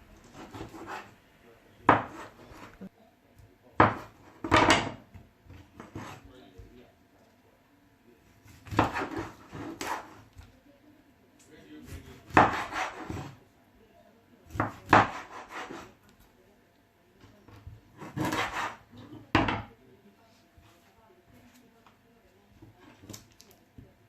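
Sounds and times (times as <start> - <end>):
knife cutting frozen fish: 8.4 - 10.2, 18.0 - 19.1.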